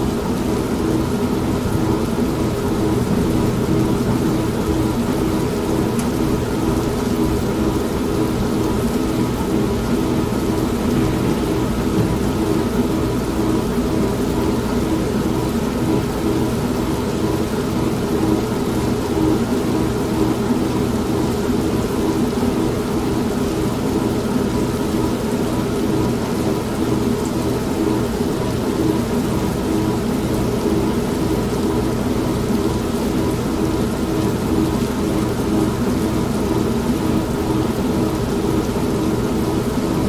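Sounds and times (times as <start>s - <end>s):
steady rain: 0.0s - 40.0s
washing machine motor hum: 0.8s - 18.5s.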